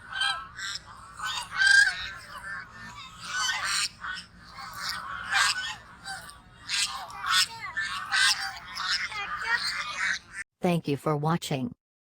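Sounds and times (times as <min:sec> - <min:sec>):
geese honking: 0:00.0 - 0:10.2.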